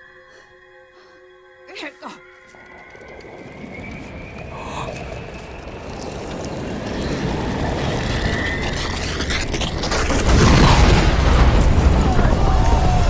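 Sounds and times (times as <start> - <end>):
faint high whine: 2.3 - 9.4
low rumble: 2.5 - 13.0.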